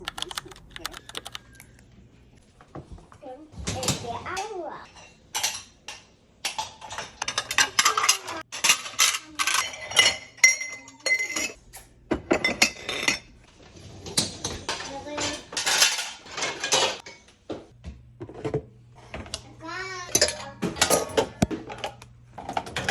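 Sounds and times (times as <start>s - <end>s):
dishware clinking and clattering: 3.6s - 18.6s, 20.0s - 22.9s.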